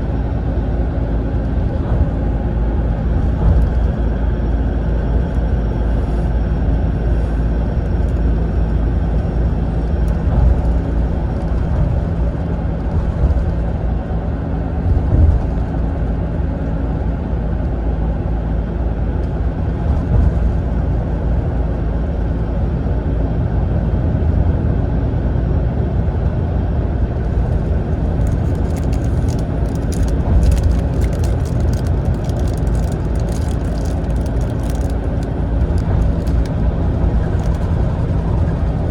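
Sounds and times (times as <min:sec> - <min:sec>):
tyre and road noise: 0:00.0 - 0:23.2, 0:26.6 - 0:38.9
diesel engine droning: 0:00.0 - 0:38.9
faint crackling rattles: 0:27.2 - 0:38.9.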